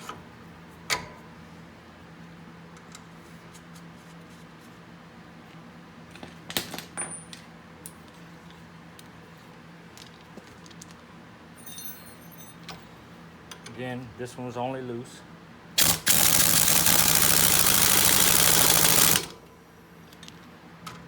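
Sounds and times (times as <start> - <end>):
metallic ring: 11.6 - 12.7
metal tools clinking on steel: 11.6 - 12.9.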